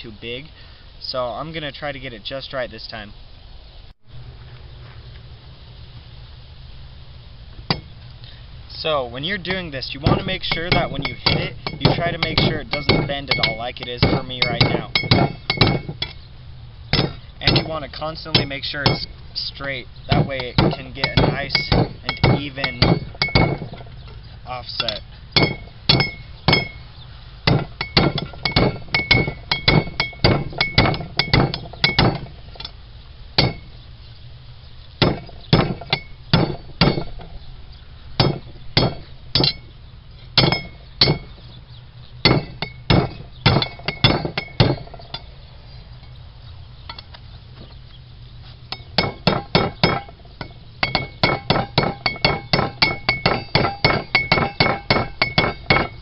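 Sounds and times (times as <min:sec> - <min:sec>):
hammer striking metal on anvil: 0:10.0 - 0:16.2, 0:16.9 - 0:19.1, 0:20.1 - 0:23.8, 0:24.8 - 0:26.8, 0:27.5 - 0:32.7, 0:33.4 - 0:33.7, 0:35.0 - 0:37.2, 0:38.2 - 0:39.7, 0:40.4 - 0:41.4, 0:42.2 - 0:45.3, 0:48.7 - 0:56.0.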